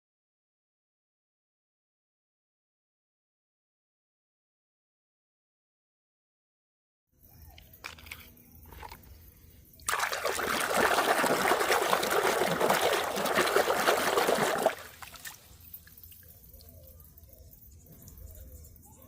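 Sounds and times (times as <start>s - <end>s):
water running and splashing: 9.8s - 18.3s.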